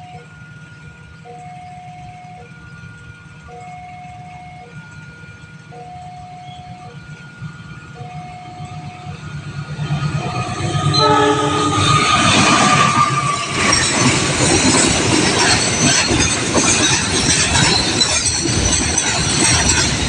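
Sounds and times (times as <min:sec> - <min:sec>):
two-tone crossing alarm: 0:00.0 - 0:00.6, 0:01.2 - 0:20.0
train rumble: 0:00.0 - 0:20.0
train horn: 0:10.5 - 0:13.6.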